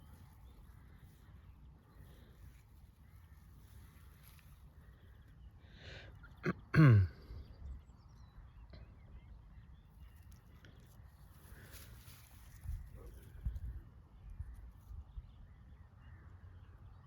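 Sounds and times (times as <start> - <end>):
breath: 4.9 - 6.2.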